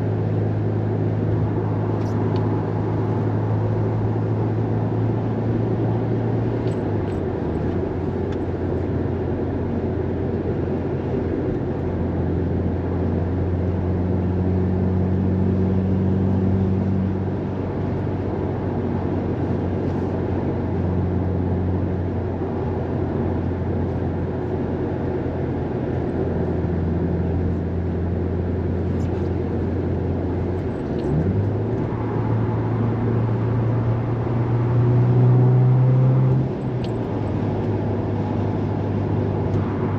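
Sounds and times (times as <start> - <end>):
car engine from inside cabin: 0.0 - 39.9
tyre and road noise: 0.0 - 39.9.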